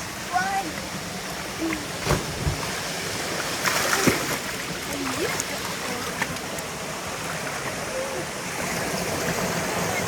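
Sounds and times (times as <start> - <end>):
waterfall rushing into pool: 0.0 - 10.0
water splash: 1.6 - 7.8.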